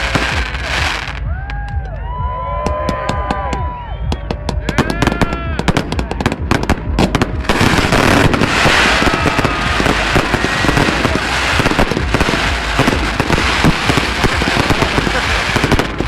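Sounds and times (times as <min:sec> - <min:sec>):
fireworks crackling: 0:00.0 - 0:01.3, 0:02.7 - 0:16.0
firework whistles: 0:07.6 - 0:16.0.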